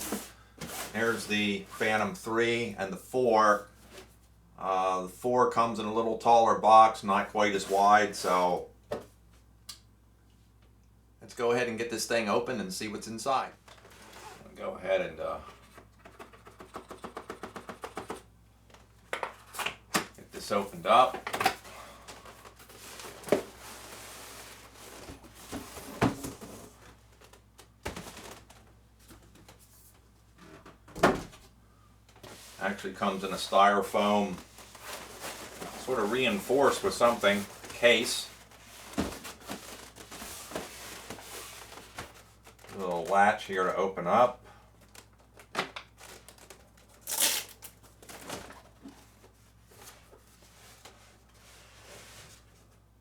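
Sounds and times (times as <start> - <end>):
cardboard scraping and rustling: 0.0 - 1.8, 22.2 - 29.7, 32.2 - 43.2, 45.9 - 52.8
foam scraping rustle: 34.0 - 41.9.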